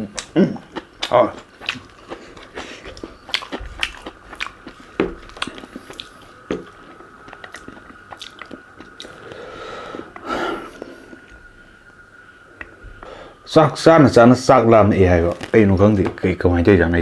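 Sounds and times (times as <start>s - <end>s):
person chewing and crunching: 0.0s - 9.4s
faint high whine: 0.0s - 17.0s.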